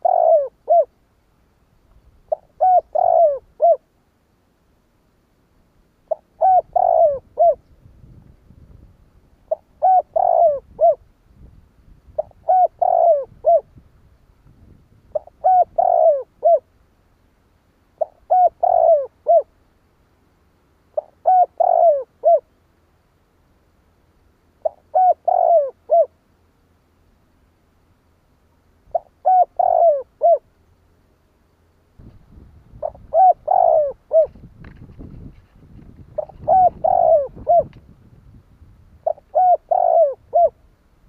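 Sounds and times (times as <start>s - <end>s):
dove cooing: 0.0s - 1.0s, 2.3s - 3.9s, 6.1s - 7.6s, 9.5s - 11.0s, 12.2s - 13.8s, 15.1s - 16.7s, 18.0s - 19.5s, 20.9s - 22.6s, 24.6s - 26.2s, 28.9s - 30.5s, 32.8s - 35.3s, 36.0s - 37.8s, 39.0s - 40.7s.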